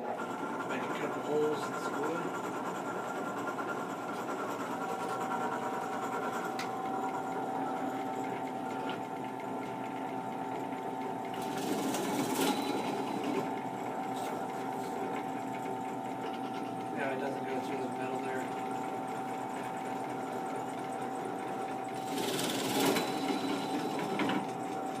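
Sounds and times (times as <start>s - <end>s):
drill press motor whine: 0.0s - 25.0s
drill bit boring into wood: 21.9s - 24.5s.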